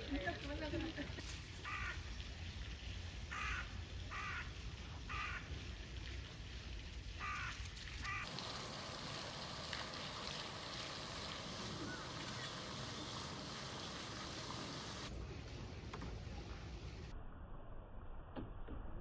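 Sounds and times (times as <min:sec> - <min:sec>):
harsh caw-like animal calls: 0:01.6 - 0:02.1, 0:03.3 - 0:04.5, 0:05.1 - 0:05.5, 0:07.2 - 0:08.4.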